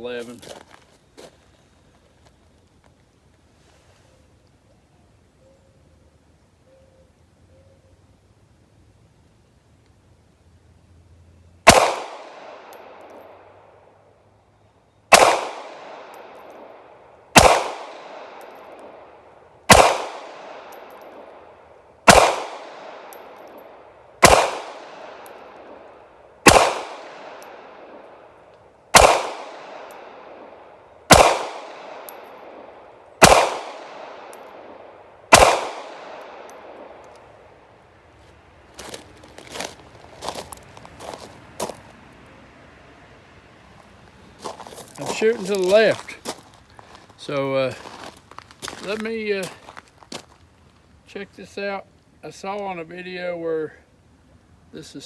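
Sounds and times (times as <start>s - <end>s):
pistol shots echoing: 11.6s - 13.5s, 15.1s - 28.2s, 28.9s - 37.1s.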